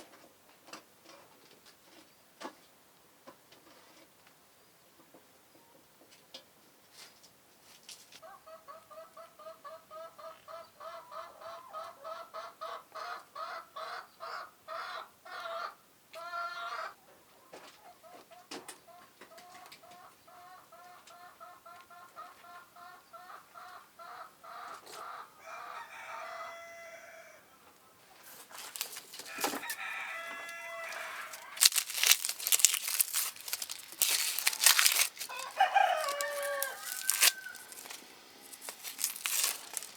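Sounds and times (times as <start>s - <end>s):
chickens clucking: 8.2s - 26.9s, 27.6s - 39.9s
loud crackling noise: 30.9s - 39.9s.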